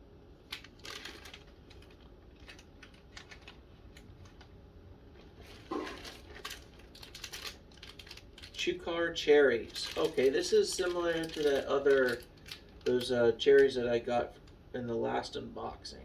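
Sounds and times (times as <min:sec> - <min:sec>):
snack packaging crinkling: 0:00.4 - 0:14.6.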